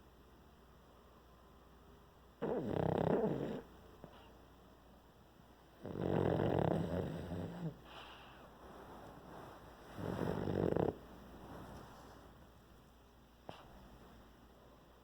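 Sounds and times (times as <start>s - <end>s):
dog snoring: 2.4s - 4.3s, 5.7s - 8.3s, 9.8s - 12.0s.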